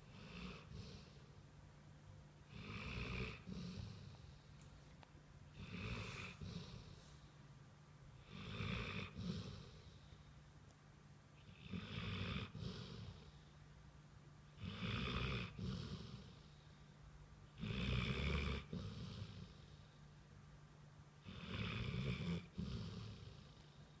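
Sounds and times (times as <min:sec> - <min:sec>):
dog snoring: 0:00.0 - 0:01.3, 0:02.5 - 0:04.5, 0:05.5 - 0:07.3, 0:08.2 - 0:10.1, 0:11.4 - 0:13.4, 0:14.6 - 0:16.7, 0:17.5 - 0:19.9, 0:21.2 - 0:23.9.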